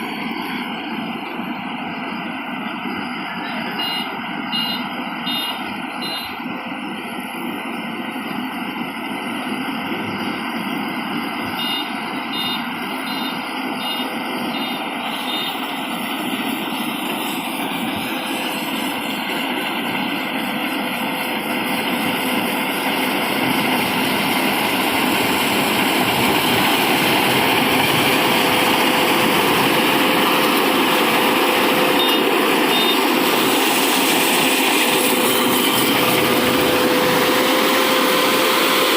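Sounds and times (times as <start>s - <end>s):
combine harvester mechanical din: 0.0s - 38.9s
short high beeps: 3.4s - 6.4s, 11.6s - 15.8s, 31.9s - 33.1s.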